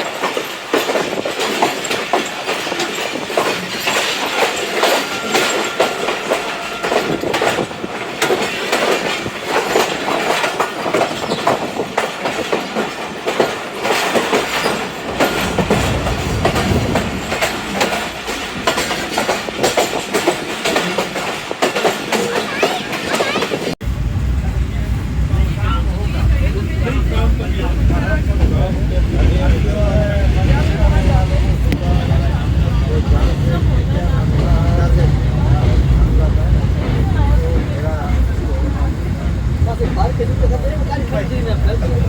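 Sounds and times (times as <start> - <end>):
train wheels clattering over rail joints: 0.0 - 23.8
deep train rumble: 0.0 - 42.0.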